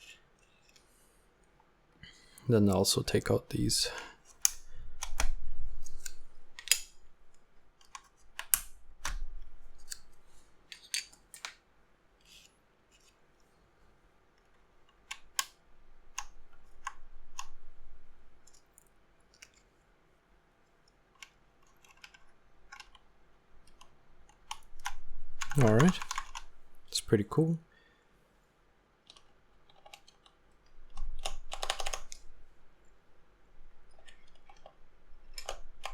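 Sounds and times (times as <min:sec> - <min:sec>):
keycaps clicking and snapping: 0:04.3 - 0:07.0, 0:07.8 - 0:09.2, 0:21.2 - 0:26.5, 0:29.1 - 0:32.2, 0:34.0 - 0:35.9.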